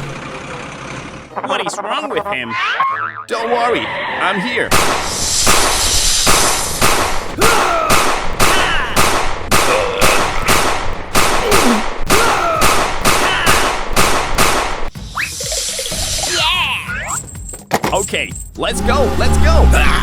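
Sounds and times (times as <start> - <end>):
firecracker bangs: 4.7 - 14.9.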